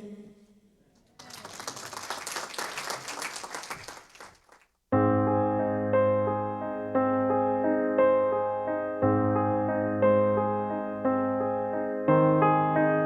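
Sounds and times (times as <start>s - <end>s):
audience applauding: 1.2s - 4.7s.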